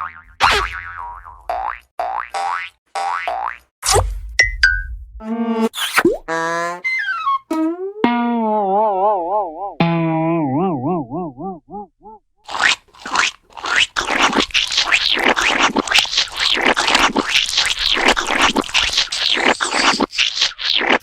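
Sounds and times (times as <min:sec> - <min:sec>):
rapid scratching and scraping: 0:12.5 - 0:21.0.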